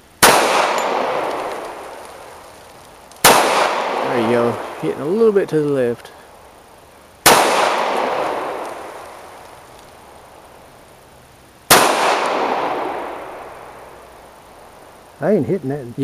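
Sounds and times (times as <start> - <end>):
gunshots echoing: 0.2 - 2.6, 3.2 - 5.4, 7.2 - 9.4, 11.7 - 13.9.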